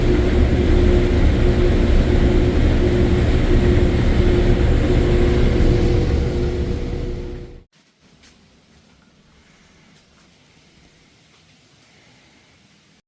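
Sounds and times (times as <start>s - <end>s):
mid-pitched hum: 0.0s - 7.7s
vehicle engine running: 0.0s - 7.7s.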